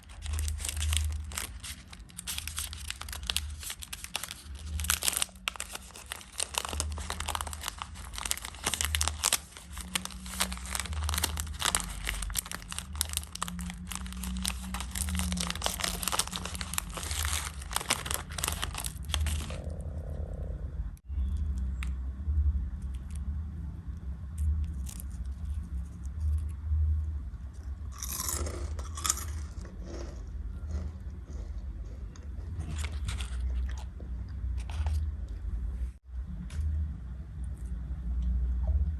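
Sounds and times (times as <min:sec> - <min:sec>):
wrappers crinkling and tearing: 0:00.0 - 0:19.7
steady low rumble: 0:00.0 - 0:38.9.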